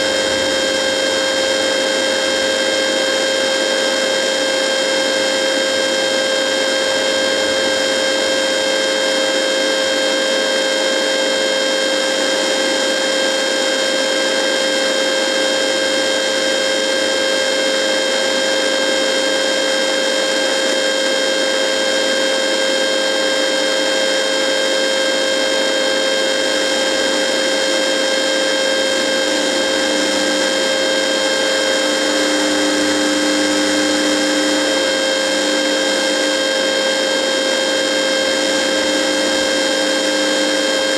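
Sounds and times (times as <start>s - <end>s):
lower humming tone: 0.0s - 3.1s, 5.9s - 9.7s.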